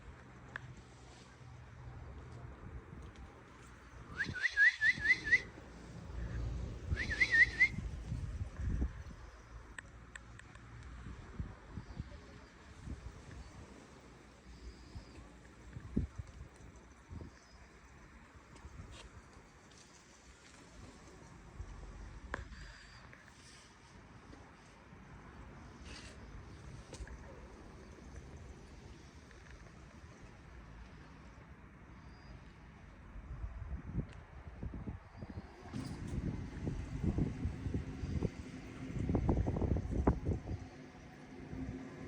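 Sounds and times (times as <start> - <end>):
whistled chirping trills: 4.1 - 5.6, 6.9 - 7.9
low rumbling background: 34.9 - 42.0.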